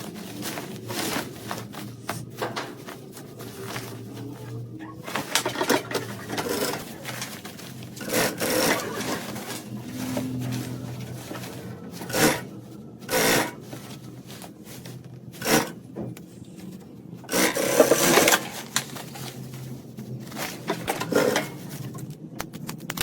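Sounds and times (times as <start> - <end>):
rubbing and scraping handling: 0.0 - 22.7.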